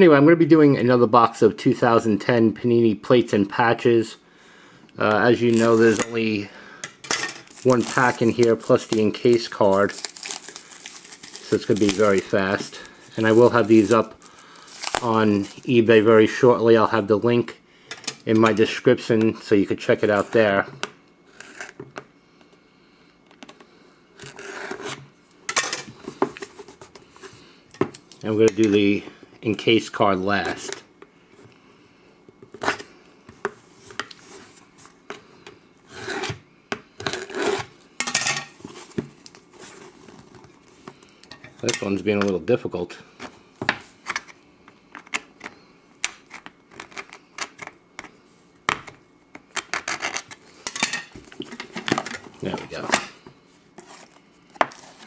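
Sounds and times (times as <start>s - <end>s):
packaging scraping and rustling: 5.3s - 6.4s, 7.2s - 16.0s, 38.5s - 41.2s, 49.6s - 55.0s.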